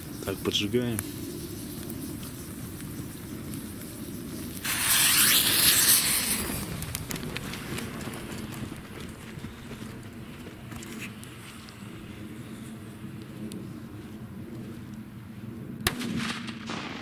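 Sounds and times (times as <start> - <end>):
firework hissing: 0.0 - 12.4
bonfire crackling: 0.0 - 17.0.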